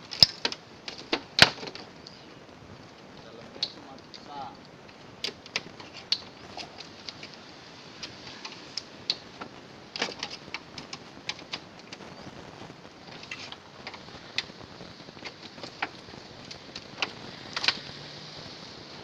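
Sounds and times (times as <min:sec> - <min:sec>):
steady hiss: 0:00.0 - 0:19.0.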